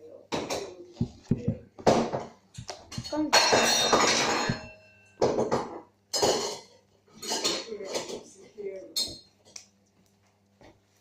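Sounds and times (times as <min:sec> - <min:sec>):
small hard objects knocking: 0:01.0 - 0:06.4.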